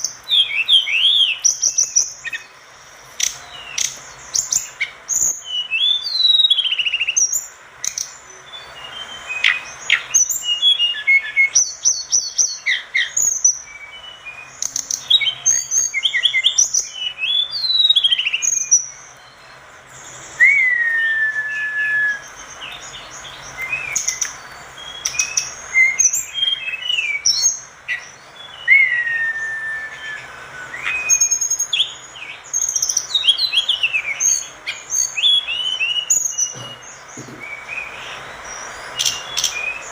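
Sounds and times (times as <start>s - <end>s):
bird singing chirps and trills: 0.0s - 39.9s
bird whistled glides: 20.0s - 39.9s.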